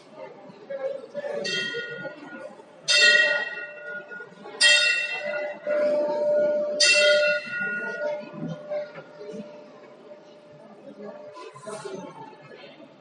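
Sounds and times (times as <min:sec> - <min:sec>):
temple bell ringing: 0:01.3 - 0:09.7.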